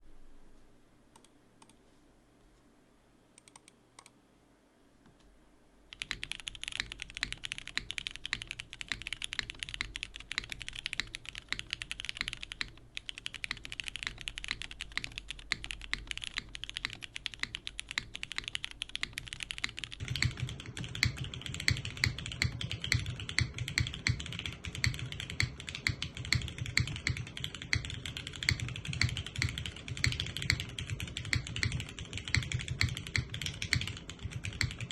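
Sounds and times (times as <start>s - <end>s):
faint mouse clicks: 1.1s - 1.8s, 3.4s - 4.2s
fast typing on mechanical keyboard: 5.9s - 34.9s.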